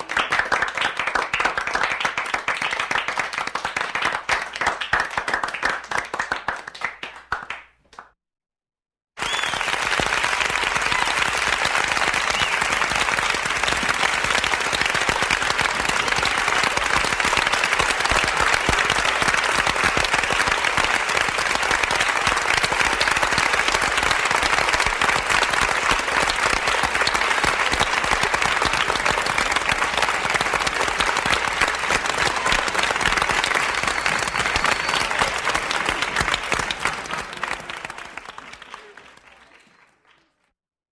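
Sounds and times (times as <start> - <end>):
crowd applauding: 0.0 - 8.1, 9.2 - 40.6.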